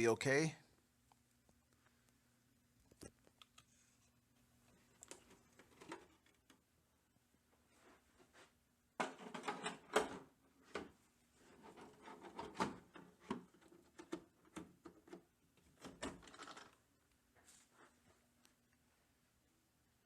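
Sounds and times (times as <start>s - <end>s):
toy and packaging handling: 15.9s - 16.8s.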